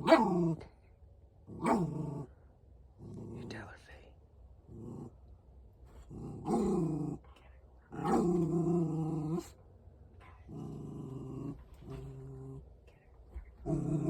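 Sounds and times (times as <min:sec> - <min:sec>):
dog growling: 0:00.0 - 0:00.6, 0:01.5 - 0:02.3, 0:03.0 - 0:03.6, 0:04.7 - 0:05.2, 0:06.0 - 0:07.3, 0:07.9 - 0:09.6, 0:10.3 - 0:12.7, 0:13.6 - 0:14.0.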